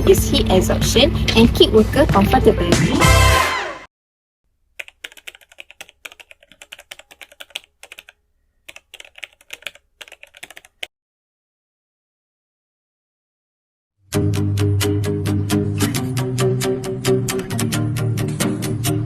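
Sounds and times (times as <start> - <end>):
keyboard typing: 4.7 - 10.9.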